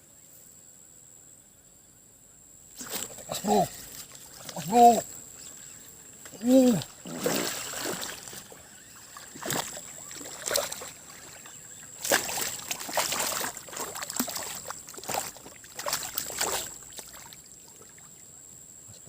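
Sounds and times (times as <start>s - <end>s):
water splashing and sloshing: 2.8s - 5.0s, 6.2s - 18.3s.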